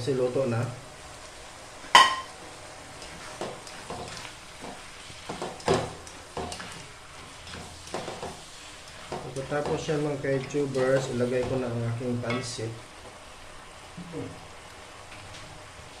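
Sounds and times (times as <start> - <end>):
food hissing while cooking: 0.0 - 16.0
stirring knocks and scrapes in pot: 3.0 - 13.2.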